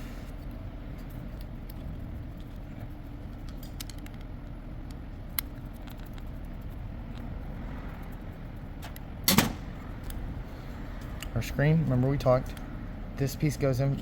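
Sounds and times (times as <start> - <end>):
low background hum: 0.0 - 14.0
small clicks of parts handled: 3.2 - 6.3, 10.0 - 10.2, 11.0 - 11.4.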